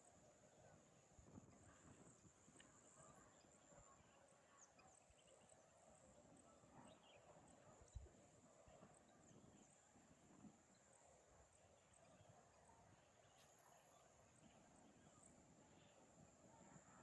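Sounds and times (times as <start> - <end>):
faint chirps: 10.4 - 17.0.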